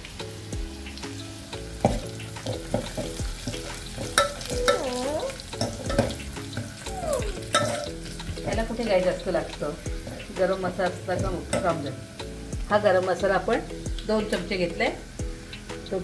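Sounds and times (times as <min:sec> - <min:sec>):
spices sizzling in hot oil: 0:00.0 - 0:16.0
spoon scraping a pan: 0:01.9 - 0:06.7, 0:07.4 - 0:08.2.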